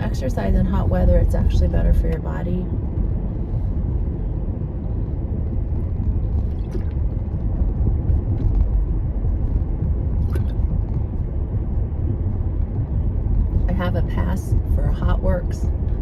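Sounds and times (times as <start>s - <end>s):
low rumble: 0.0s - 16.0s.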